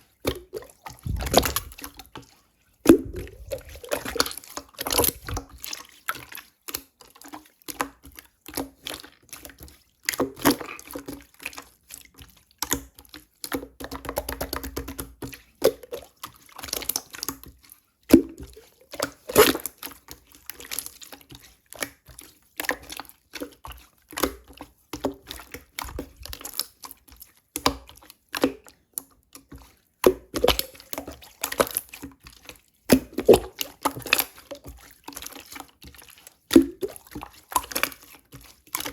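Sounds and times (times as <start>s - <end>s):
slime squishing and popping: 1.0s - 1.9s, 2.9s - 5.7s.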